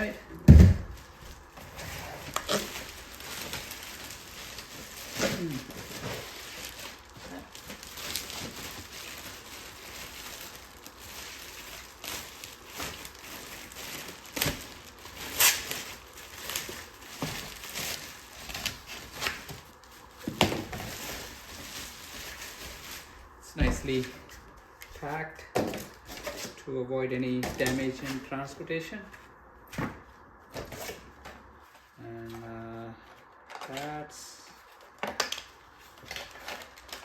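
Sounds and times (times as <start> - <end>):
packing material rustling: 0.0 - 26.6, 27.3 - 37.0.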